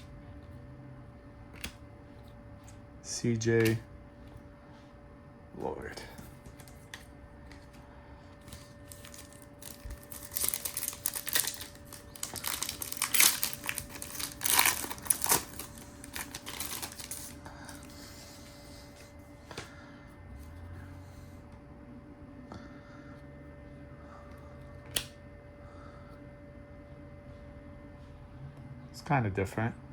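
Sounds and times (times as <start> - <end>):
card handling clicks: 1.5 - 1.8, 3.4 - 3.9
foil wrapper crinkling and tearing: 8.5 - 17.4.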